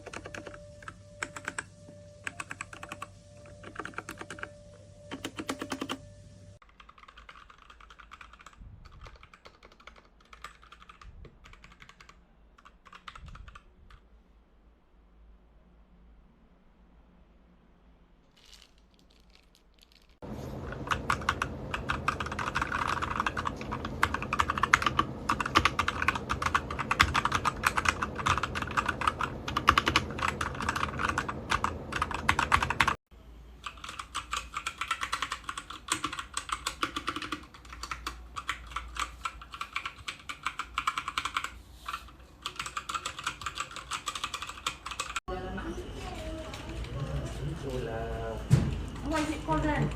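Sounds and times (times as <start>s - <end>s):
mechanical keyboard typing: 0.0s - 6.0s, 6.6s - 14.0s, 20.7s - 33.0s, 33.6s - 45.3s.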